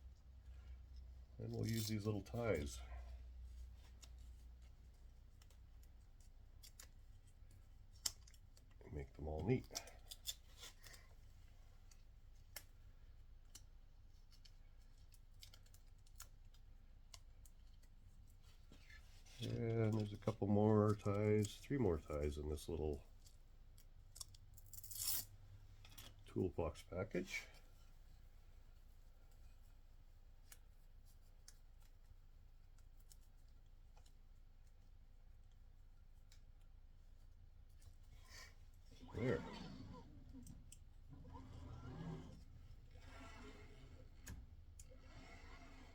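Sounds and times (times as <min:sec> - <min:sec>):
faint clicks of ties fastening: 0:00.4 - 0:42.0.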